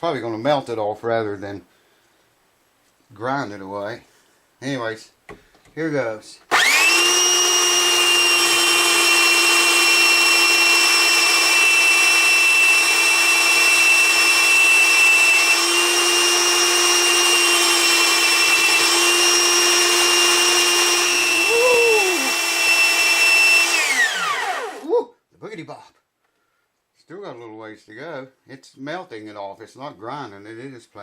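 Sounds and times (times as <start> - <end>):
electric grinder whining: 6.5 - 24.9.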